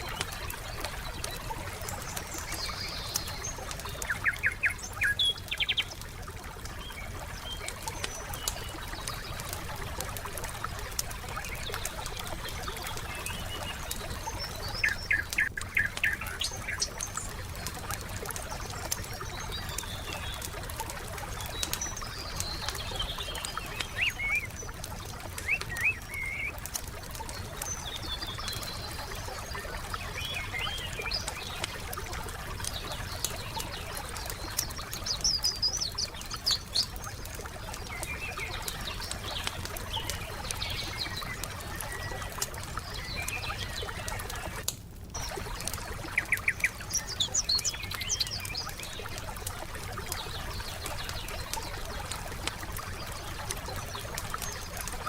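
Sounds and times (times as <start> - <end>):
songbirds chirping: 0.0 - 55.0
wood fire crackling: 0.0 - 55.0.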